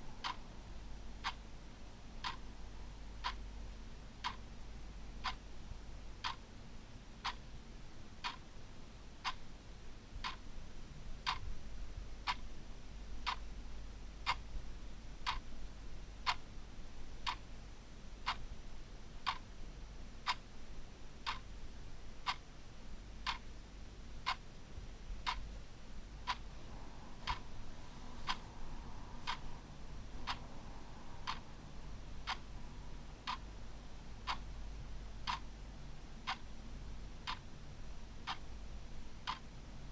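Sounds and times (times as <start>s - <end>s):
faint low hum: 0.0s - 39.9s
clock ticking: 1.2s - 1.4s, 2.2s - 2.4s, 4.2s - 4.4s, 5.2s - 5.4s, 6.2s - 6.4s, 15.2s - 15.5s, 19.2s - 19.4s, 21.2s - 21.4s, 23.2s - 23.4s, 26.2s - 26.5s, 27.2s - 29.6s, 30.2s - 30.5s, 31.2s - 31.5s, 32.2s - 34.5s, 35.2s - 35.5s, 36.3s - 36.5s, 37.2s - 37.5s, 38.2s - 38.4s, 39.2s - 39.5s.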